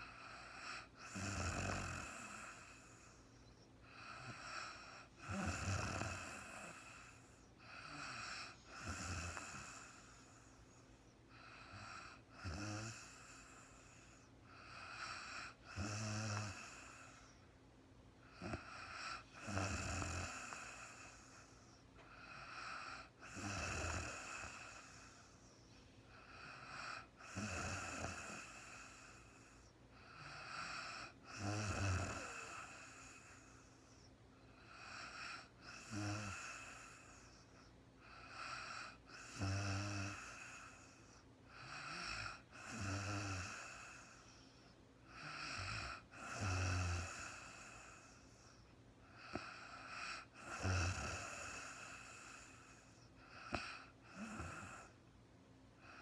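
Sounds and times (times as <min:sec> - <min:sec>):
woman snoring: 0:00.0 - 0:03.2, 0:03.8 - 0:10.6, 0:11.4 - 0:17.4, 0:18.2 - 0:25.4, 0:26.1 - 0:34.0, 0:34.6 - 0:44.4, 0:45.1 - 0:48.6, 0:49.2 - 0:55.0.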